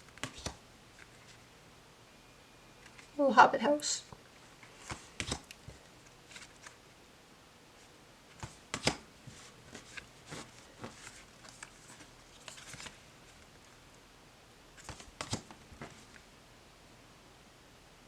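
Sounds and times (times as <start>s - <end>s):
cards tapping down: 0.0s - 1.2s, 4.8s - 5.8s, 8.4s - 9.1s, 14.8s - 16.1s
cards rustling: 0.0s - 1.5s, 2.8s - 3.2s, 4.1s - 6.8s, 8.3s - 13.8s, 14.8s - 16.3s.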